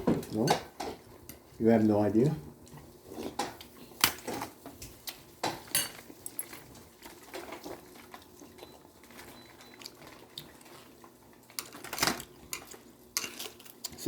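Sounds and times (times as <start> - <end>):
cutlery and dishes clinking: 5.4 - 6.7.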